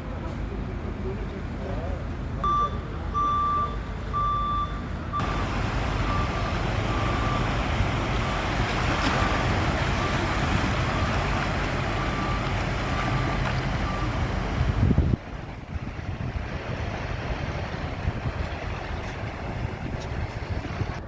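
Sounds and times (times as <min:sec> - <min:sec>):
vehicle reversing alarm beeping: 0:02.4 - 0:15.2.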